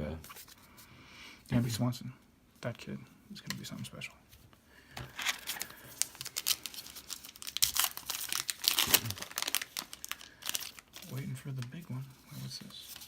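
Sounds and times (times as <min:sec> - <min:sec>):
card wrapper crinkling and rustling: 0:05.0 - 0:13.0.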